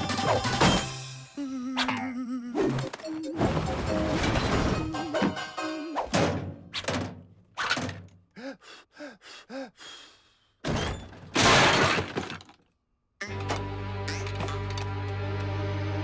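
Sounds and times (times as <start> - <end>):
music: 0.0 - 1.6, 2.6 - 6.5, 13.2 - 16.0.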